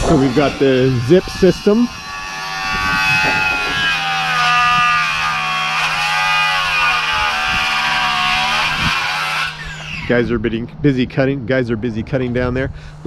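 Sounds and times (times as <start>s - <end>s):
low hum: 0.0s - 6.0s
power saw cutting lumber: 0.0s - 10.4s.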